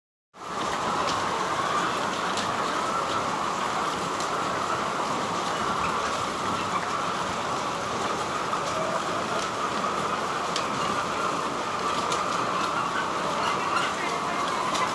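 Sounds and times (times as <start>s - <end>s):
flock of chickens chattering: 0.4s - 14.9s.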